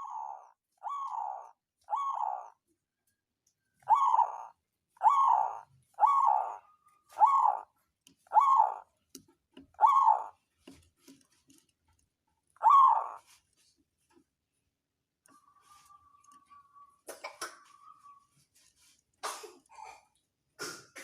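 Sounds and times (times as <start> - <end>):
dove cooing: 0.0 - 2.6, 3.8 - 7.7, 8.3 - 8.9, 9.8 - 10.4, 12.6 - 13.4.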